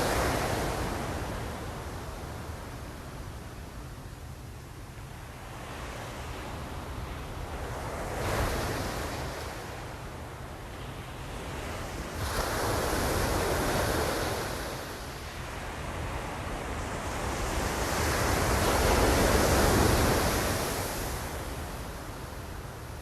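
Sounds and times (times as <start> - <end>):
ocean waves breaking on shore: 0.0 - 3.9, 5.2 - 23.0.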